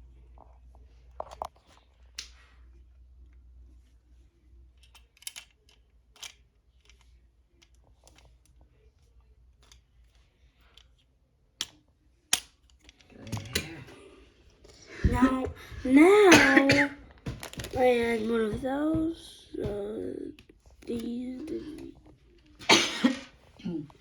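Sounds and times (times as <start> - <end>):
plastic parts clicking and snapping: 4.7 - 8.6, 9.5 - 13.9, 17.2 - 17.8.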